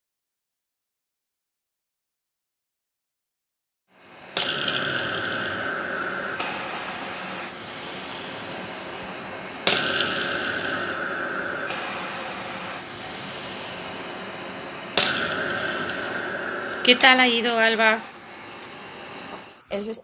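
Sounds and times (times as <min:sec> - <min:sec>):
machine air rushing: 0:04.0 - 0:19.7.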